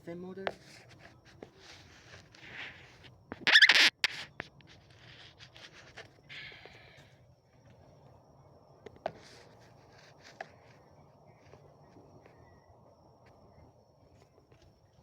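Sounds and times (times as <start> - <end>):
scratching and rustling handling noise: 0.2 - 6.6, 8.9 - 12.6.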